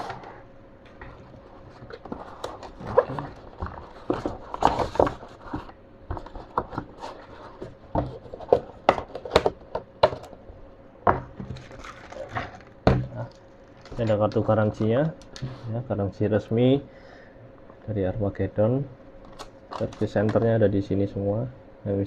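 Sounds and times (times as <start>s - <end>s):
cardboard packaging rustling: 1.0s - 10.3s, 11.4s - 15.5s, 19.3s - 20.4s.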